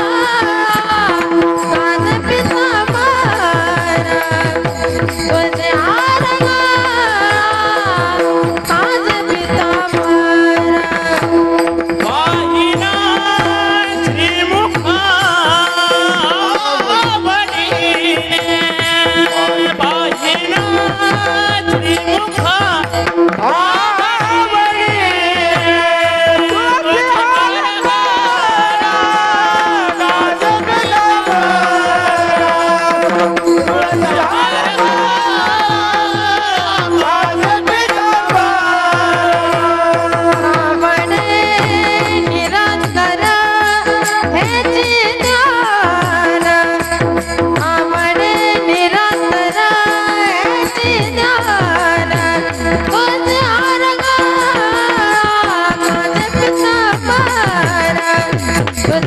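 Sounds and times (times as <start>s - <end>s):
hand drum: 0.0s - 59.0s
man singing devotional song: 0.0s - 59.0s.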